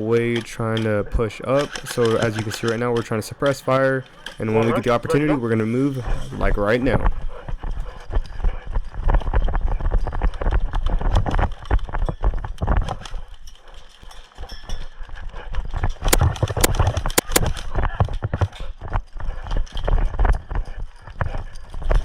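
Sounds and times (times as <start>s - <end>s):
hurried footsteps on hard ground: 0.0s - 13.3s
gear rattling: 0.0s - 22.0s
sharp cracks: 16.1s - 18.4s.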